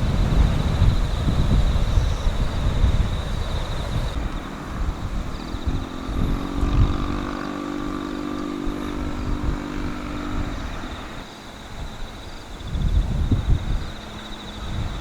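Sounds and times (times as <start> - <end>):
vehicle engine passing: 0.0 - 11.4
wind buffeting microphone: 0.0 - 15.0.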